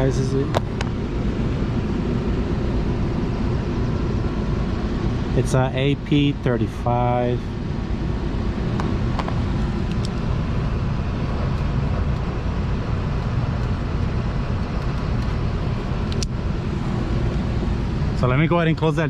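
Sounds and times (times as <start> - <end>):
machinery droning: 0.0 - 19.0.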